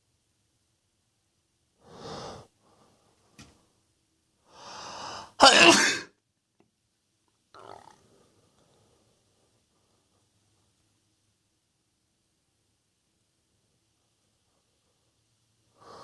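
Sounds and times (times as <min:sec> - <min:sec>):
drawn-in breath: 0:01.8 - 0:03.2, 0:04.4 - 0:05.4
man sneezing: 0:05.4 - 0:06.2.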